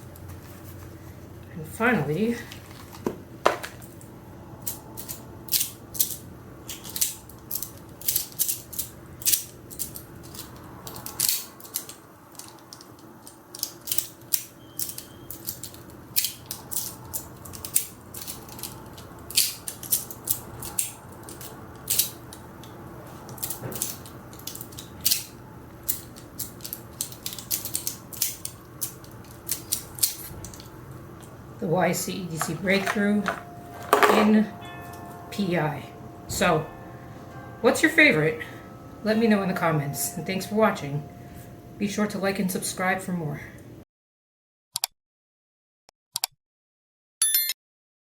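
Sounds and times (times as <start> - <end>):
metal fidget toy clicking: 4.6 - 22.2, 25.9 - 30.6.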